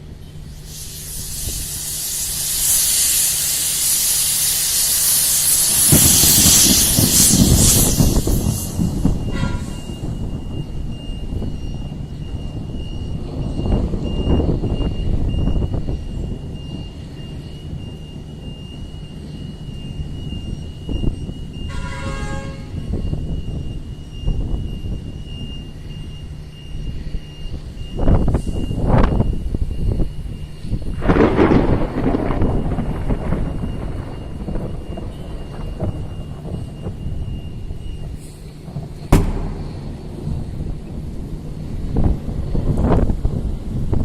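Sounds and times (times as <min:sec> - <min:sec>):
road traffic: 0:00.0 - 0:44.0
heavy rain hissing: 0:00.4 - 0:10.4, 0:31.0 - 0:44.0
vehicle horn toot: 0:09.2 - 0:10.0, 0:21.7 - 0:23.0
low rumble: 0:31.0 - 0:44.0.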